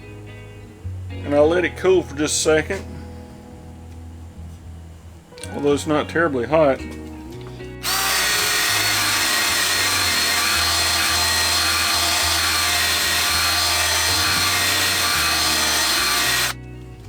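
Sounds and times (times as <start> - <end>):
blade sharpener grinding: 7.8 - 16.6.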